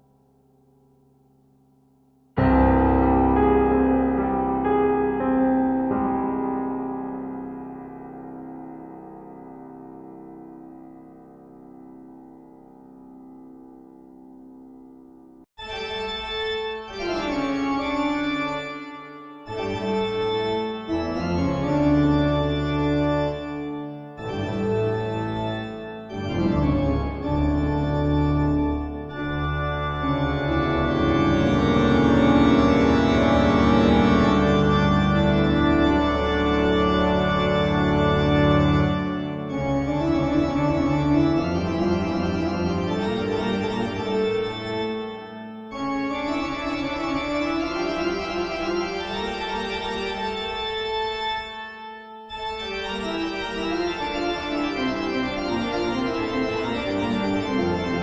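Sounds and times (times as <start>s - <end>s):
eerie organ music: 2.4s - 7.6s, 15.6s - 58.0s.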